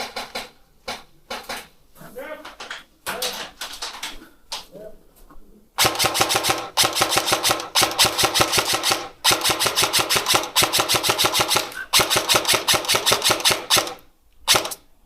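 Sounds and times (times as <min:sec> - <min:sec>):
airsoft gun firing bursts: 0:05.8 - 0:14.9.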